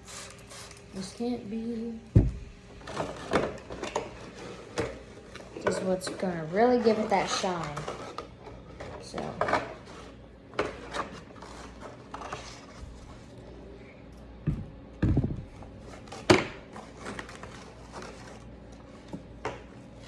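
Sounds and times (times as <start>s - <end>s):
dull thumps: 2.1s - 2.6s, 14.4s - 15.6s
taps and knocks on plastic: 14.4s - 15.5s.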